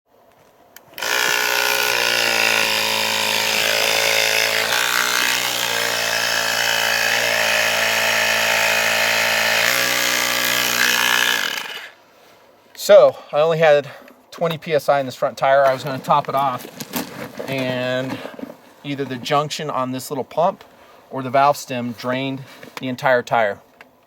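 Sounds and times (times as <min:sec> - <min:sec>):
electric tire inflator running: 0:00.9 - 0:12.0.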